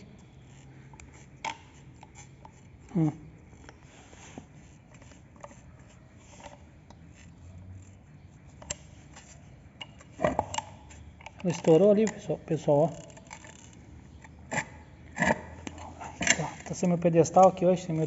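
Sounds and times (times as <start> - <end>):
suspension bushing creaking: 8.6 - 18.0.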